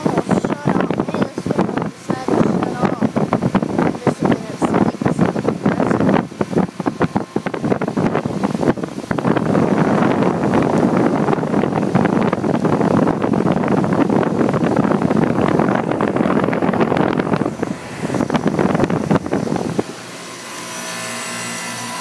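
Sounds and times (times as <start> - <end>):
air buffeting on microphone: 0.0 - 22.0
air conditioner condenser running: 0.0 - 22.0.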